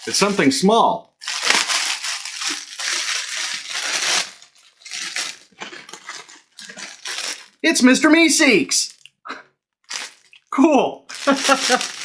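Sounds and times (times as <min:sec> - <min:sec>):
plastic package crinkling and ripping: 0:00.0 - 0:07.6, 0:09.8 - 0:10.5, 0:11.1 - 0:12.0.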